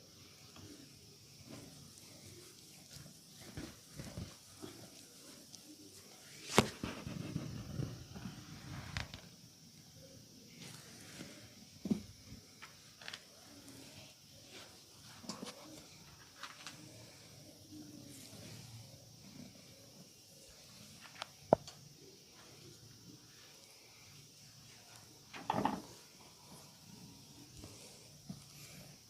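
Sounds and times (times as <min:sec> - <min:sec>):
rustling: 0:00.6 - 0:09.3
hands massaging body: 0:01.4 - 0:08.9.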